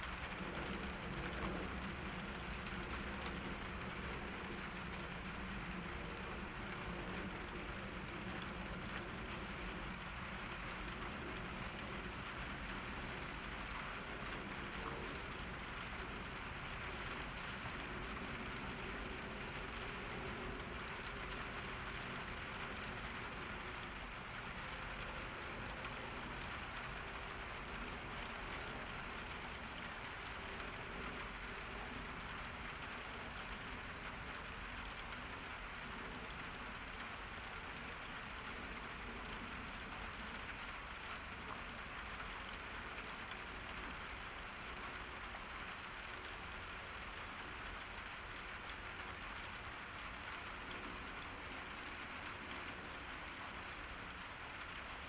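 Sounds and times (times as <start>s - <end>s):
steady rain hiss: 0.0s - 55.0s
bird chirping: 44.4s - 44.6s, 45.8s - 46.0s, 46.7s - 47.8s, 48.5s - 48.7s, 49.4s - 49.6s, 50.4s - 50.6s, 51.4s - 51.7s, 53.0s - 53.3s, 54.6s - 55.0s.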